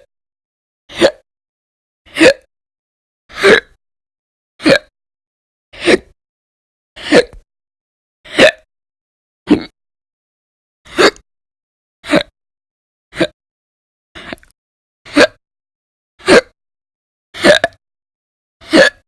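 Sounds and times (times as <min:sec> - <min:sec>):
loud hiccups: 0:00.9 - 0:01.2, 0:02.1 - 0:02.5, 0:03.3 - 0:03.8, 0:04.6 - 0:04.9, 0:08.3 - 0:08.7, 0:09.5 - 0:09.7, 0:10.9 - 0:11.2, 0:13.1 - 0:13.4, 0:15.1 - 0:15.4, 0:16.2 - 0:16.6, 0:17.4 - 0:17.8, 0:18.6 - 0:19.0.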